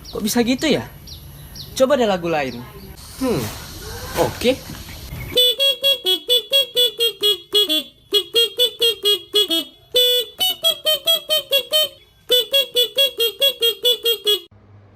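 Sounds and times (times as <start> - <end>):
motorcycle musical horn beeping: 5.3 - 14.6.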